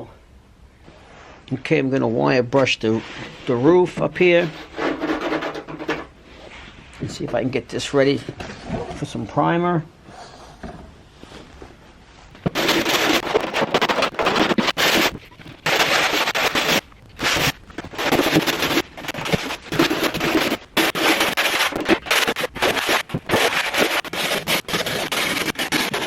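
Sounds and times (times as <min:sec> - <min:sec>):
wire brush rasping on metal: 0:12.4 - 0:26.0.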